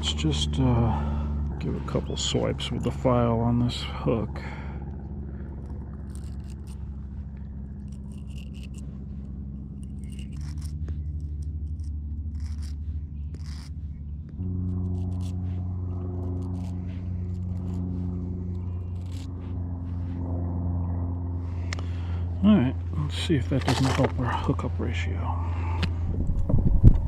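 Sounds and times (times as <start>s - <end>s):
steady low hum: 0.0s - 27.0s
file scraping fishing hook: 5.6s - 20.2s.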